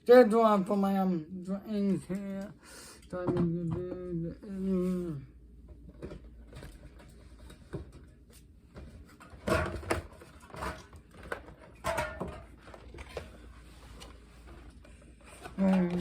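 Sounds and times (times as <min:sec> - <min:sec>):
drink cans knocking and clattering: 0:09.3 - 0:13.0.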